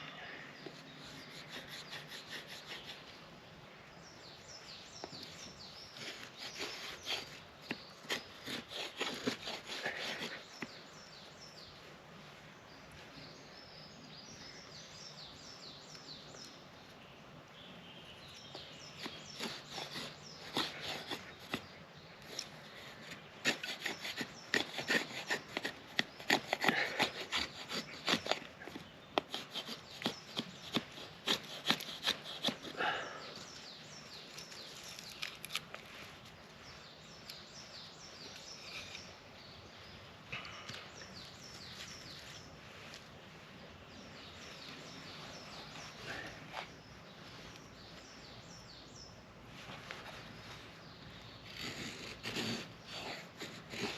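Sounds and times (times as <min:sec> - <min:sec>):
knife blade shaving wood: 0:01.0 - 0:03.0, 0:05.9 - 0:10.8, 0:18.9 - 0:21.7, 0:22.3 - 0:33.2, 0:34.3 - 0:35.8, 0:51.4 - 0:53.9.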